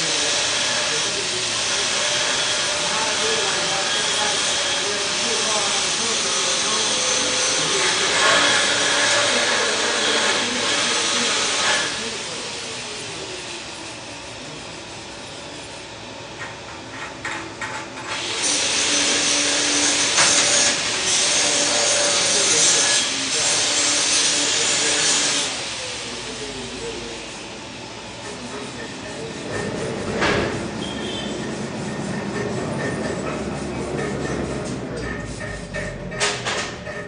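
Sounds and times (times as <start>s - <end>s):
arc welding crackle: 16.4s - 27.3s.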